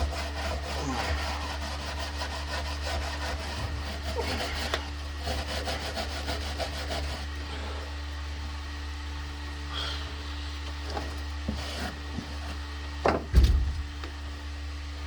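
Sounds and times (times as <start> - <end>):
rapid scrubbing strokes: 0.0 - 7.8.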